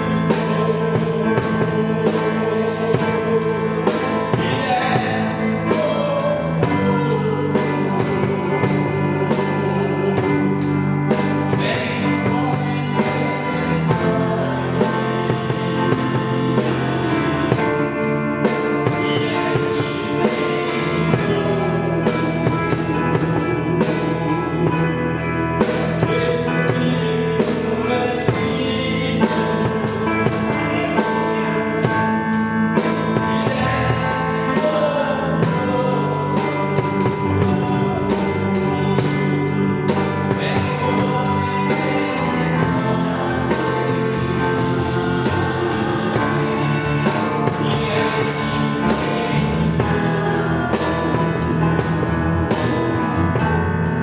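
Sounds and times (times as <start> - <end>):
electronic keyboard gospel song: 0.0 - 54.0
programmed drum beat: 25.6 - 54.0.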